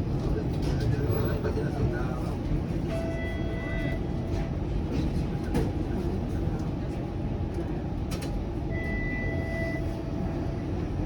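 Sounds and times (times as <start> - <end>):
streetcar rumbling on track: 0.0 - 11.0
brief steady tone: 8.7 - 10.1.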